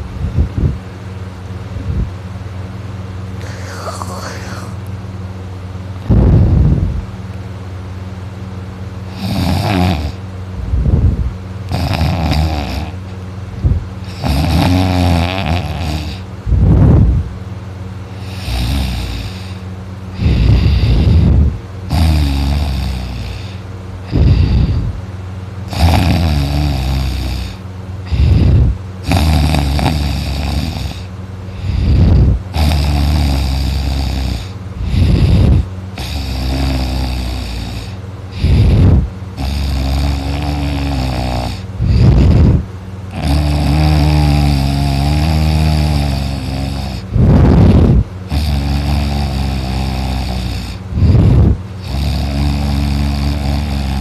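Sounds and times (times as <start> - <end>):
man moaning on the breath: 3.4 - 4.9
man snoring heavily: 3.4 - 4.9, 9.0 - 10.2, 11.7 - 13.1, 14.0 - 17.0, 18.1 - 25.0, 25.6 - 54.0.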